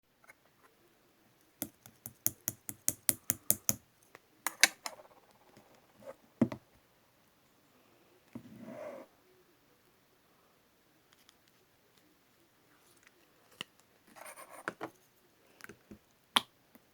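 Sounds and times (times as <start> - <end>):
sharp clicking taps of slime: 1.6 - 3.8.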